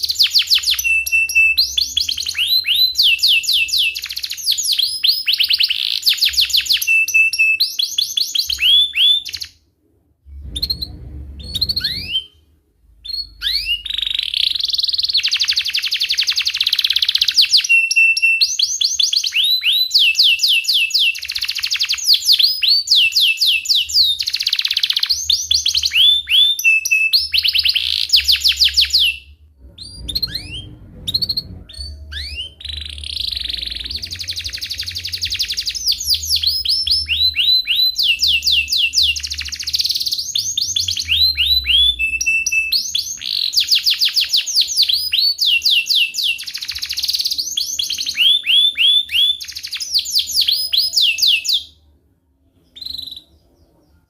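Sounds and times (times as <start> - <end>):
canary singing: 0.0 - 9.6, 10.4 - 51.9, 52.5 - 54.0
short low rumble: 9.9 - 13.5, 29.3 - 35.6.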